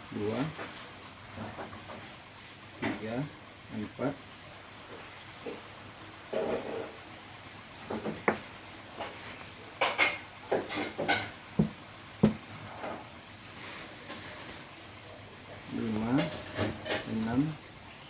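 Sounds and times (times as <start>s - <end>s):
leaves rustling: 8.3s - 9.7s, 11.6s - 14.9s
light knocks: 11.6s - 12.5s.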